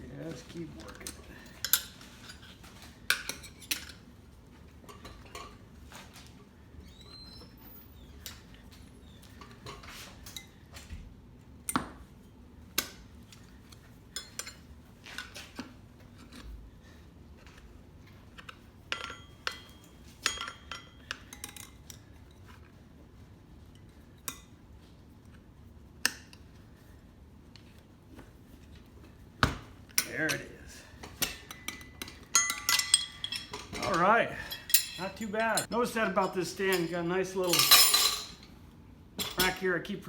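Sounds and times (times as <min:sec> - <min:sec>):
metal tire spoons clanking on rim: 0:31.2 - 0:38.4.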